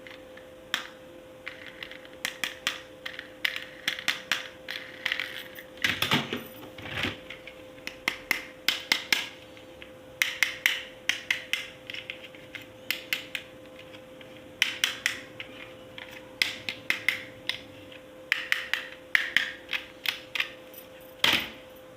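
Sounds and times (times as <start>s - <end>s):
faint steady hum: 0.0s - 21.9s
plastic toy parts clicking: 0.7s - 5.4s.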